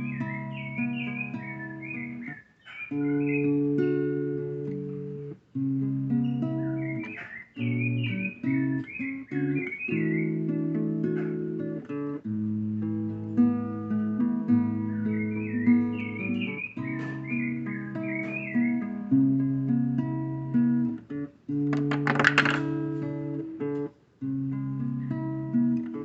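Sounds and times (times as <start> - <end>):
birdsong warbling: 0.0 - 4.6, 6.0 - 11.8, 13.9 - 19.1
acoustic guitar strumming chords: 0.0 - 26.0.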